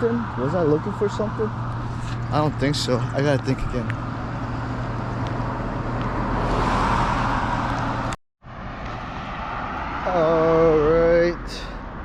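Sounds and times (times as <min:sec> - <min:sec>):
vehicle passing: 0:00.0 - 0:12.0.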